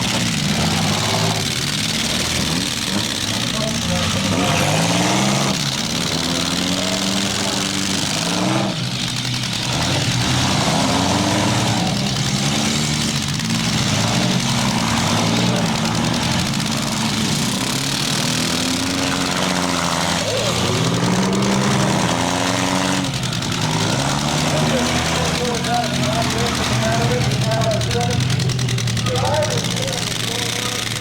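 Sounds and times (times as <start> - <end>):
small car engines revving: 0.0 - 31.0.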